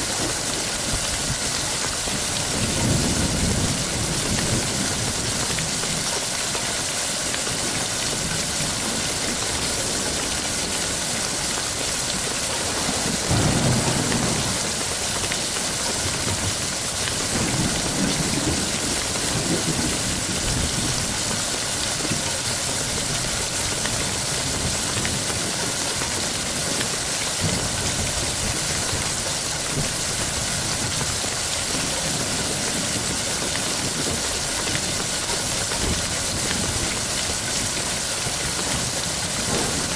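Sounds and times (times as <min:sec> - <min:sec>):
heavy rain: 0:00.0 - 0:39.9
thunder rolling: 0:09.3 - 0:21.0.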